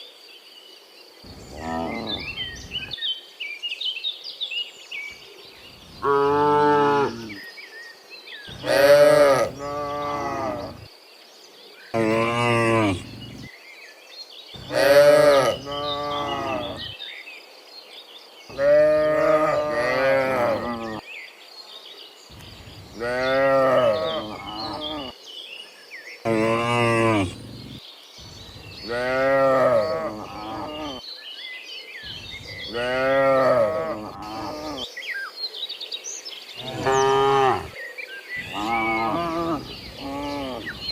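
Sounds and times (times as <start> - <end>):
cattle mooing: 1.5 - 2.5, 8.5 - 10.8, 12.0 - 13.5, 14.6 - 16.9, 18.5 - 21.0, 23.0 - 25.1, 26.3 - 27.8, 28.9 - 31.0, 32.7 - 34.8, 36.6 - 37.8, 38.5 - 40.9.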